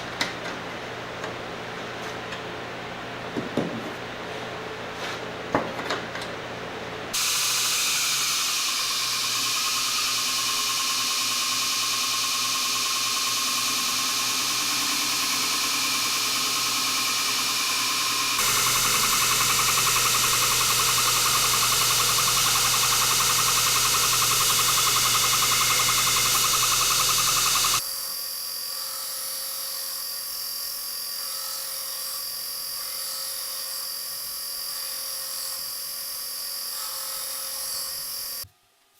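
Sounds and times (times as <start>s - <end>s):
power tool whining: 7.2s - 27.8s.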